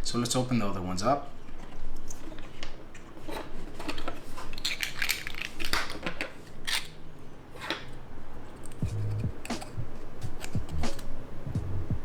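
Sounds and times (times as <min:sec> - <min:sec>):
plastic boxes clicking and scraping: 0:01.0 - 0:11.1.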